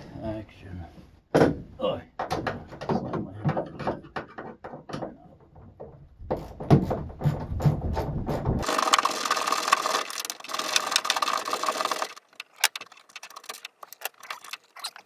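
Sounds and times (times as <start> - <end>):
small motor running: 8.6 - 12.4
metal parts clicking and tapping: 8.6 - 15.0.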